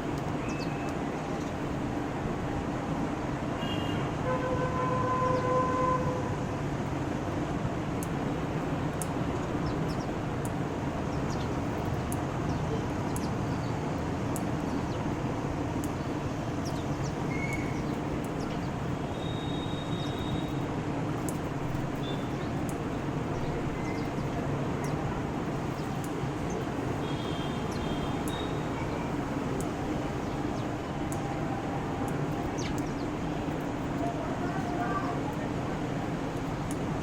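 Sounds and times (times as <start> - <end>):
traffic rumble: 0.0 - 37.0.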